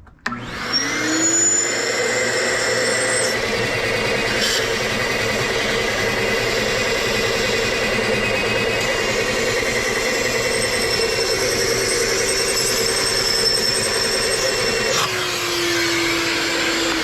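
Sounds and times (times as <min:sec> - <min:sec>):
shop vacuum motor whine: 0:00.2 - 0:17.0.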